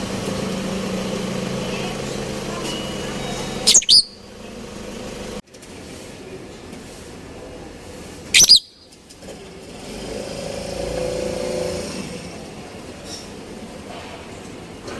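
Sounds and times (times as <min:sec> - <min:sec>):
passing vehicle engine hum: 0:00.0 - 0:05.4
pet bird shrill chirps: 0:03.7 - 0:04.2, 0:08.4 - 0:08.9.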